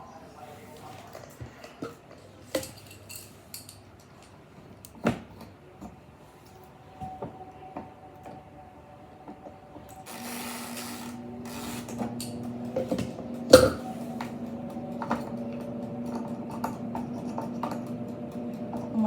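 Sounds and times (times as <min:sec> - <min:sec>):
air fryer motor hum: 0:10.0 - 0:19.0.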